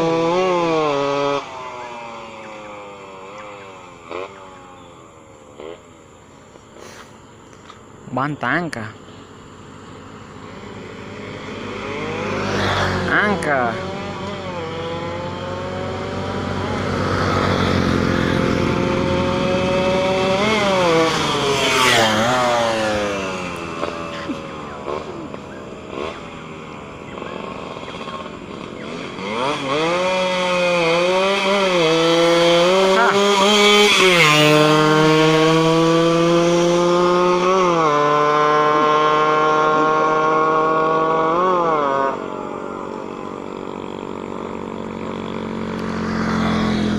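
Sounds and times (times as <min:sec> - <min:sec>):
motorcycle engine accelerating: 0:00.0 - 0:46.9.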